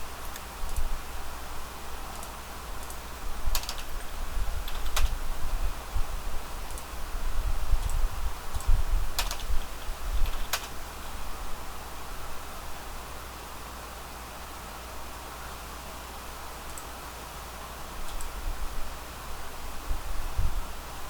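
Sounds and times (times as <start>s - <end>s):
typing on computer keyboard: 2.1s - 3.9s, 4.6s - 5.2s, 7.8s - 10.8s.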